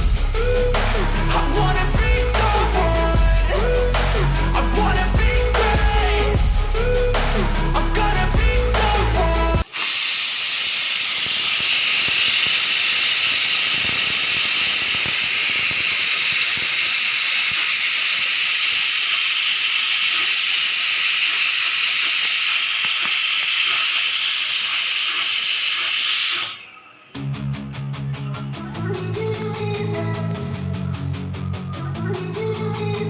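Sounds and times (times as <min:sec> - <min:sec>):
pressure cooker whistle hissing: 0:08.0 - 0:27.3.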